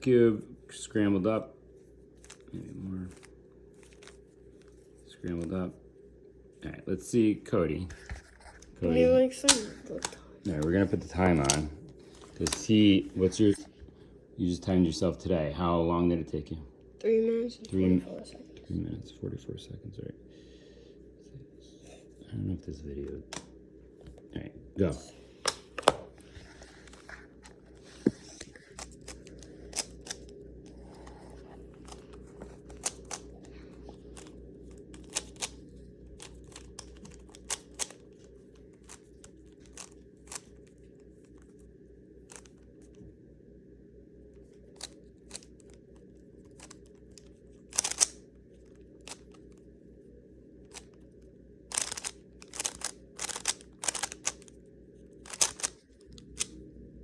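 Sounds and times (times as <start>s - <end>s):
puzzle cube plastic clicks: 28.7s - 30.3s, 31.8s - 33.5s, 34.1s - 35.6s, 36.2s - 38.2s, 38.8s - 40.7s, 42.3s - 42.6s, 44.7s - 45.8s, 46.5s - 49.6s, 51.7s - 54.6s, 55.2s - 56.5s.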